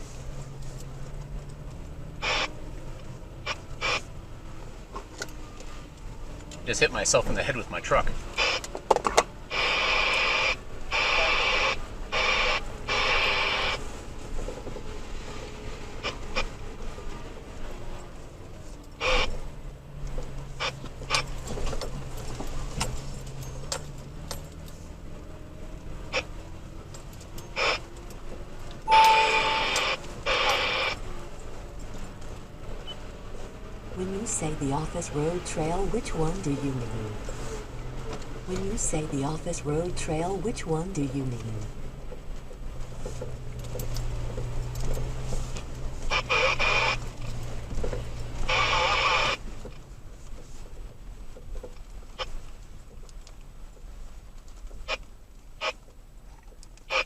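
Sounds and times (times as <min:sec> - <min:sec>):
two-way radio static: 0:02.2 - 0:02.6, 0:03.4 - 0:04.0, 0:06.7 - 0:08.7, 0:09.5 - 0:13.8, 0:19.0 - 0:19.3, 0:28.9 - 0:31.0, 0:34.0 - 0:37.5, 0:38.5 - 0:41.8, 0:46.1 - 0:47.1, 0:48.4 - 0:49.4.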